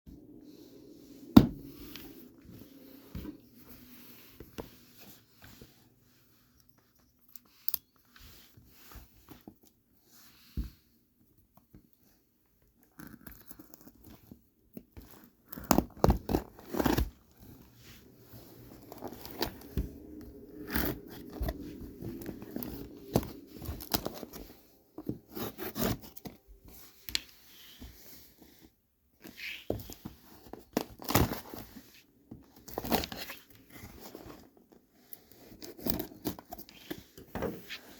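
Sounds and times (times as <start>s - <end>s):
packaging tearing and rustling: 18.4s - 26.5s.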